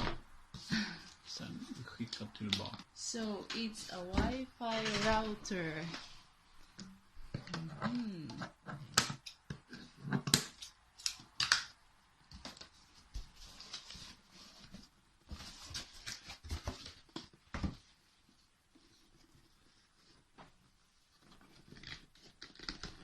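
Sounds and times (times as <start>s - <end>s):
cardboard and plastic rustling: 0.6s - 6.2s, 12.3s - 23.0s.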